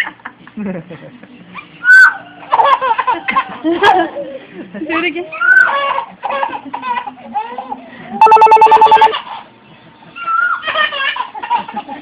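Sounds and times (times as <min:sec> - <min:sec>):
people laughing: 0:00.0 - 0:01.6, 0:02.5 - 0:04.8, 0:06.2 - 0:07.6, 0:10.6 - 0:12.0
telephone ringing: 0:08.2 - 0:09.2.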